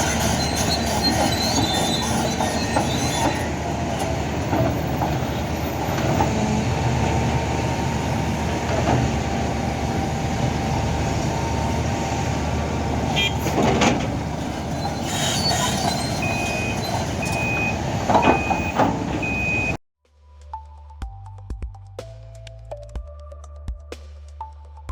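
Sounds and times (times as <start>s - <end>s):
heavy machinery diesel rumble: 0.0s - 19.8s
reversing alarm beeping: 0.0s - 19.8s
metallic knocks: 0.7s - 15.2s, 15.8s - 19.8s.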